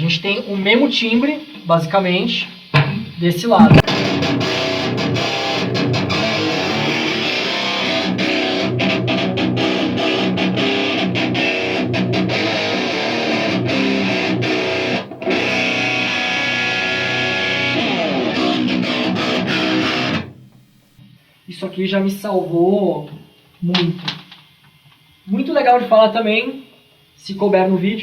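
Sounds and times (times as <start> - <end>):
distorted electric guitar riffing: 3.6 - 21.0.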